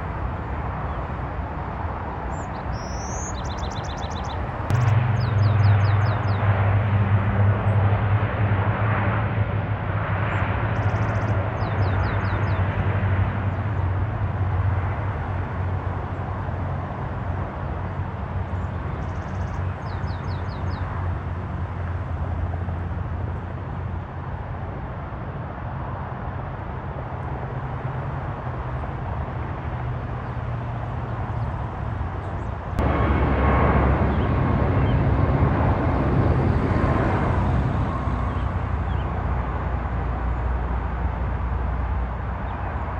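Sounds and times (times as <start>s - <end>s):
airplane engine hum: 0.0s - 42.9s
small bird chirping: 2.3s - 6.4s, 10.8s - 12.6s.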